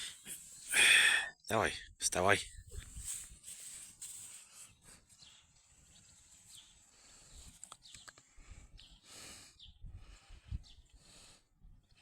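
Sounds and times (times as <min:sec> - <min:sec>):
small clicks: 0:07.5 - 0:08.3.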